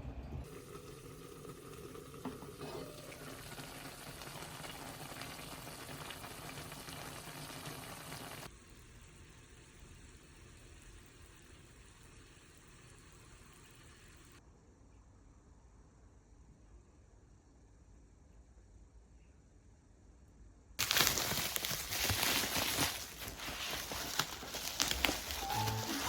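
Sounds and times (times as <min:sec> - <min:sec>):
food sizzling in a pan: 0:02.7 - 0:10.4, 0:20.8 - 0:26.0.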